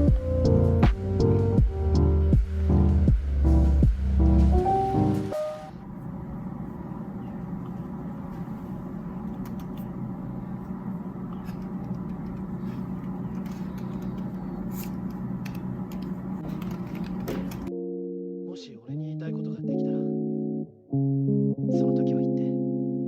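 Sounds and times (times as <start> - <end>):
low rumble and hum: 0.0 - 17.7.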